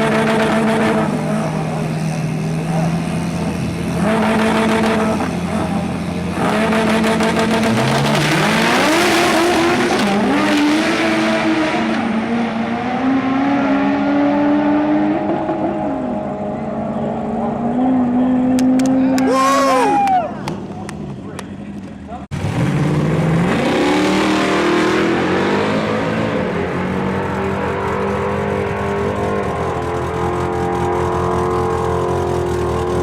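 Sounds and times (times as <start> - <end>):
car engine revving: 0.0 - 19.8, 22.3 - 33.0.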